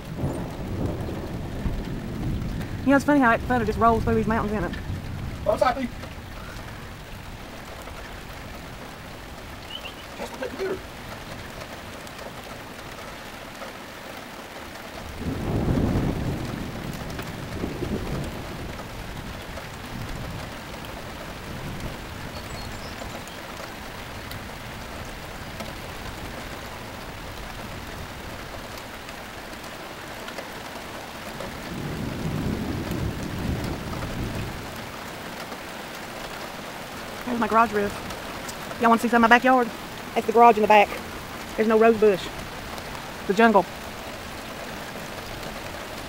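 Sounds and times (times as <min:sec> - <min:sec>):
thunder rolling: 0:00.0 - 0:07.5, 0:15.0 - 0:23.2, 0:31.4 - 0:34.9
steady rain falling: 0:00.0 - 0:46.0.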